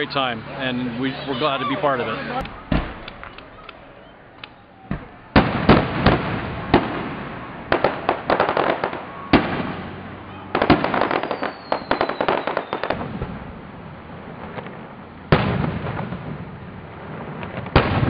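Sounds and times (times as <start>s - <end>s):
firework crackling: 2.3s - 18.0s
firework booms: 2.4s - 18.0s
falling whistle: 2.5s - 5.4s, 11.1s - 12.9s.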